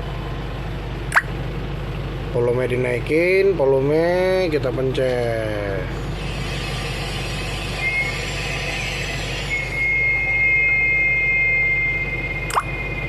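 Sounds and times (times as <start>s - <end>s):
sharp click: 1.1s - 1.3s, 12.5s - 12.7s
electronic horn hiss and whistle: 6.2s - 13.0s.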